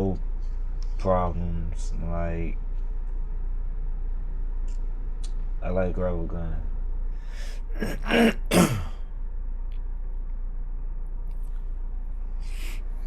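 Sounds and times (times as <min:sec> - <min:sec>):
steady low hum: 0:00.0 - 0:13.0
man clearing his throat: 0:07.7 - 0:09.0.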